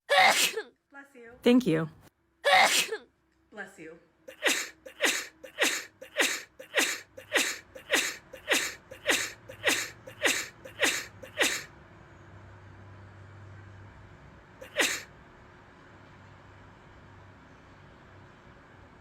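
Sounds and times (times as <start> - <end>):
short sneezes: 0.1 - 0.7, 2.5 - 3.0, 4.3 - 11.7, 14.6 - 15.1.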